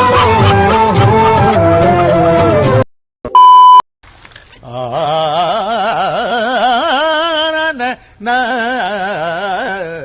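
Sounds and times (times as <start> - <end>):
person singing classical raga: 4.6 - 10.0.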